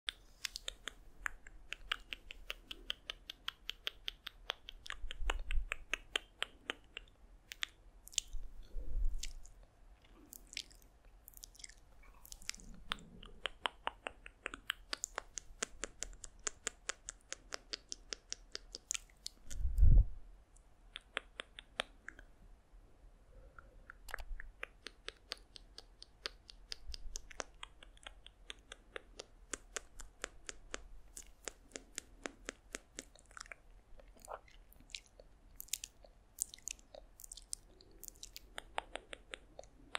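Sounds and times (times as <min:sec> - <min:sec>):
wet mouth clicks and smacks: 0:00.1 - 0:20.0, 0:20.9 - 0:22.3, 0:23.6 - 0:39.9
dull low thumps: 0:19.5 - 0:20.3.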